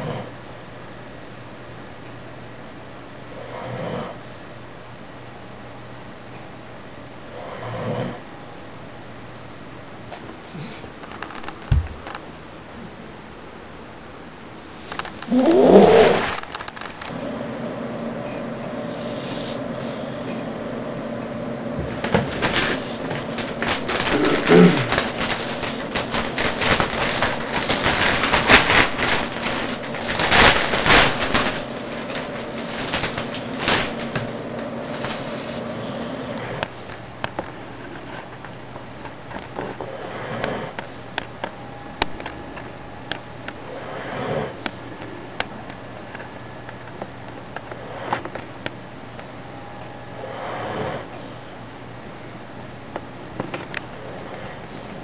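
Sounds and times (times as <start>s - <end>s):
dog snoring: 0.0s - 0.4s, 3.3s - 4.2s, 7.3s - 8.2s, 18.2s - 20.6s, 21.9s - 36.6s, 39.6s - 40.8s, 43.7s - 44.6s, 47.8s - 48.2s, 50.2s - 51.2s
steady hum: 0.0s - 55.0s.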